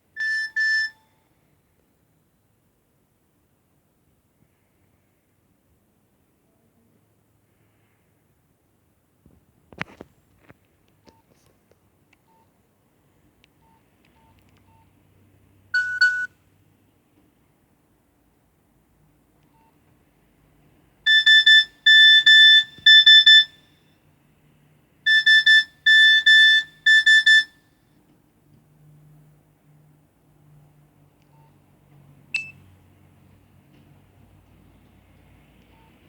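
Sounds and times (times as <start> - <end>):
mobile phone ringtone: 0.2 - 1.0, 15.8 - 16.3, 21.1 - 23.5, 25.1 - 27.5.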